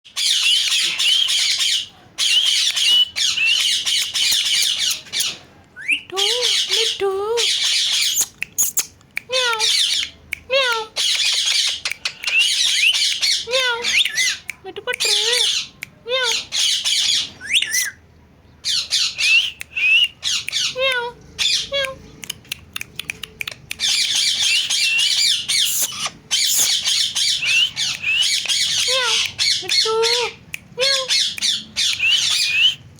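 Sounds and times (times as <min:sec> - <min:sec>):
parrot squawking: 0:00.2 - 0:18.0, 0:23.8 - 0:32.8
parrot screeching: 0:15.2 - 0:18.0, 0:23.8 - 0:32.8.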